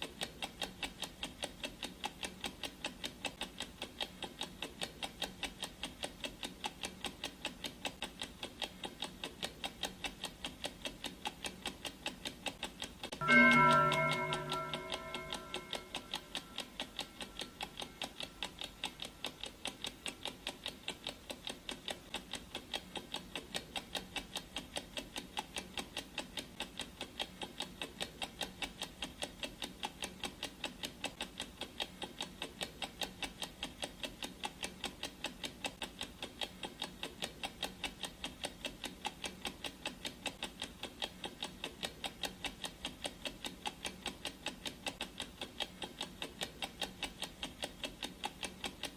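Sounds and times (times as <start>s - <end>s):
clock ticking: 0.0s - 48.9s.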